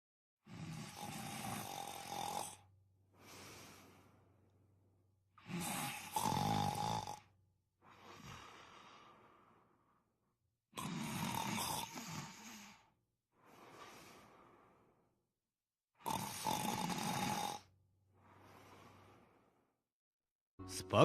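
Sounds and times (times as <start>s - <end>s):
person snoring: 0.4s - 2.6s, 5.4s - 7.3s, 7.9s - 9.2s, 10.7s - 14.5s, 16.0s - 19.5s
quiet breath: 2.4s - 6.8s, 7.8s - 11.1s, 11.8s - 15.3s, 17.6s - 19.9s.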